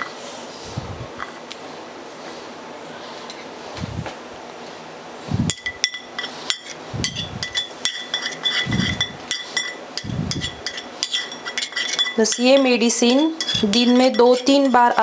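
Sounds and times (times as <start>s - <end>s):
spoon clinking against bowl: 5.5s - 15.0s.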